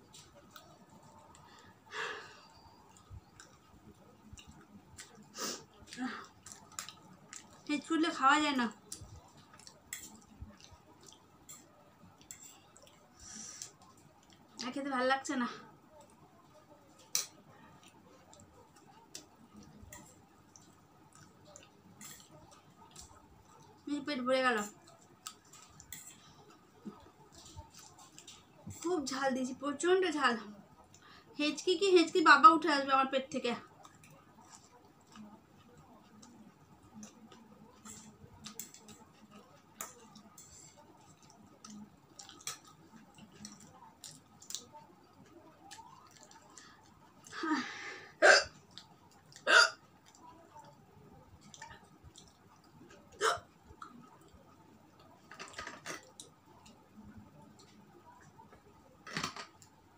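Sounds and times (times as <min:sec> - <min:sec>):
mouth smacks and clicks eating: 0:02.9 - 0:07.7, 0:08.8 - 0:14.7, 0:16.8 - 0:23.8, 0:24.6 - 0:28.9, 0:33.7 - 0:47.3, 0:48.6 - 0:56.8
person chewing: 0:02.9 - 0:07.7, 0:08.9 - 0:14.4, 0:17.0 - 0:23.8, 0:24.8 - 0:28.4, 0:37.0 - 0:47.3, 0:51.4 - 0:54.0.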